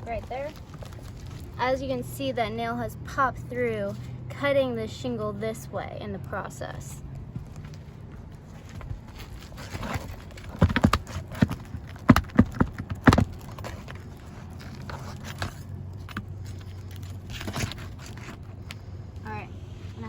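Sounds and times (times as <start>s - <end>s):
sharp knocks on shingle roof: 9.7s - 14.0s.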